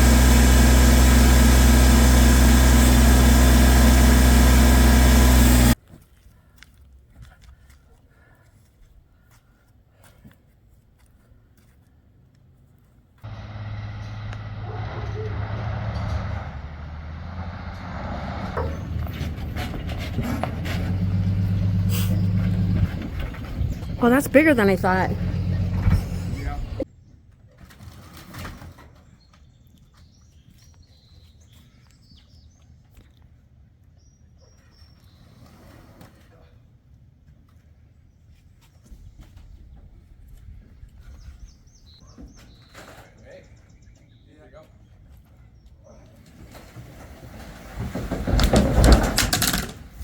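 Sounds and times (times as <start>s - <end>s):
engine running steadily: 0.0s - 5.8s, 13.3s - 16.7s, 17.3s - 26.8s.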